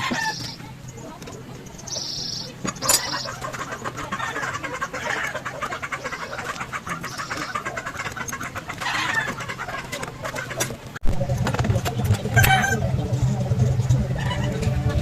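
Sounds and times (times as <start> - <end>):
bird calling: 0.0 - 10.9
steady low hum: 0.0 - 15.0.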